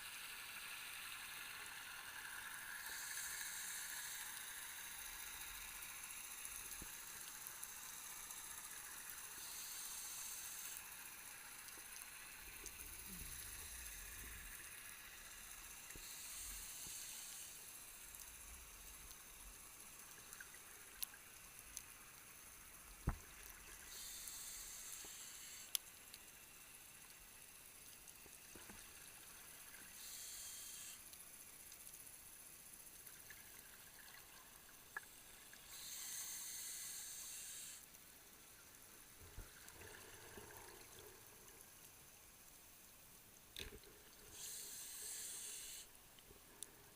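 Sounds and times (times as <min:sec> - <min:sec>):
underwater regulator breathing hiss: 0:01.4 - 0:04.8, 0:08.6 - 0:19.0, 0:23.5 - 0:25.9, 0:29.7 - 0:31.2, 0:35.1 - 0:38.0, 0:44.2 - 0:46.0.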